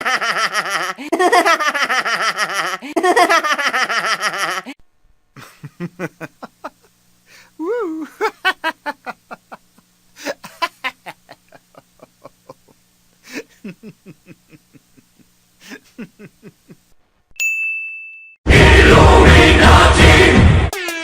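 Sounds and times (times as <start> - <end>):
laughter sound effect: 0.0 - 4.8, 5.4 - 7.0, 7.7 - 16.9
bell ding: 17.4 - 18.4.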